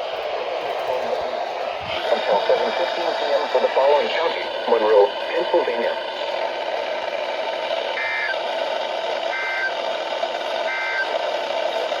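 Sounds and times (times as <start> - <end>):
radio static hiss: 1.9 - 6.0.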